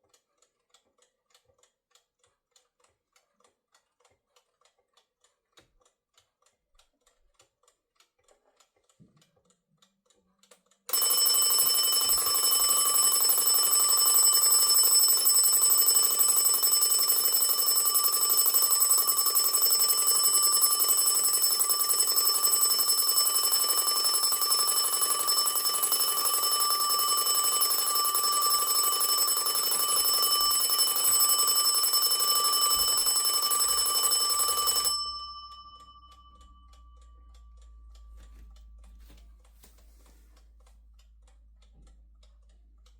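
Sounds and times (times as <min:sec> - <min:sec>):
clock ticking: 0:00.0 - 0:42.9
alarm clock bells ringing: 0:10.9 - 0:38.1.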